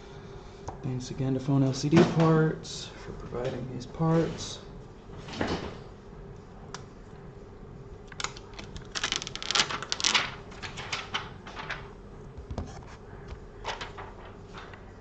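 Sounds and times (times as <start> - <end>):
plastic packaging crinkling: 8.1 - 11.8, 13.6 - 14.7.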